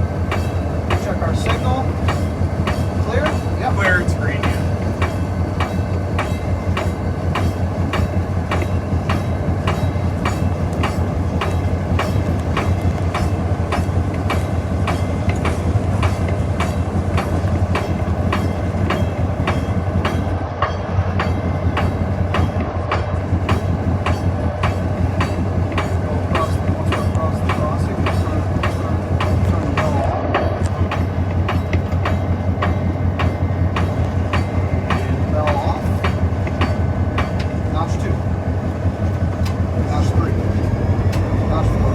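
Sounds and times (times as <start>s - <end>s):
diesel locomotive engine drone: 0.0s - 41.9s.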